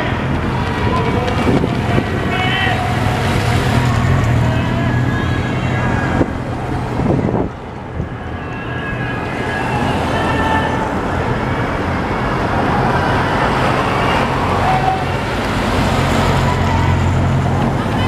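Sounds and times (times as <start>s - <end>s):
vehicle engines with road noise: 0.0s - 18.0s.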